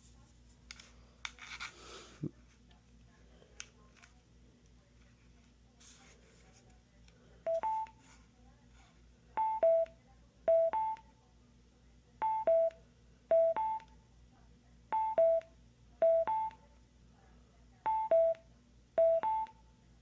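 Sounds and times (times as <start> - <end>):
two-tone speaker beeps: 7.5 - 8.0, 9.4 - 11.0, 12.2 - 13.9, 15.0 - 16.6, 17.9 - 18.4, 19.0 - 19.6.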